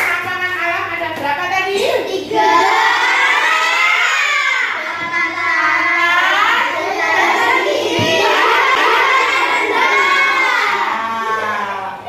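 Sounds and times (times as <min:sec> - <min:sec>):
children singing in unison: 0:02.2 - 0:11.5.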